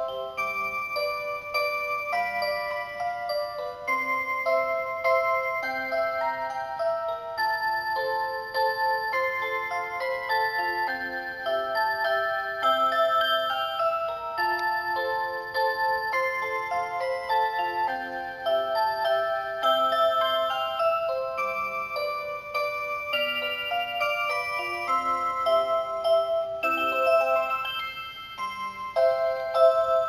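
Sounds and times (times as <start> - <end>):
electronic clock melody: 0.0 - 30.0.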